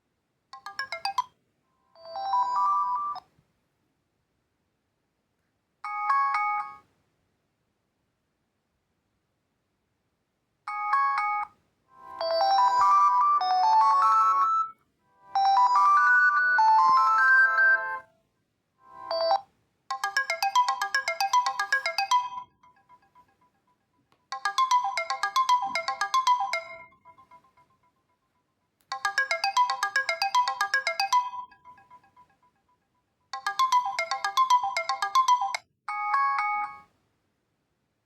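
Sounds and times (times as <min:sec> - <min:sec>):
smartphone ringtone melodies: 0:00.6 - 0:01.3, 0:02.0 - 0:03.2, 0:10.7 - 0:18.1, 0:18.9 - 0:28.2, 0:28.9 - 0:36.9.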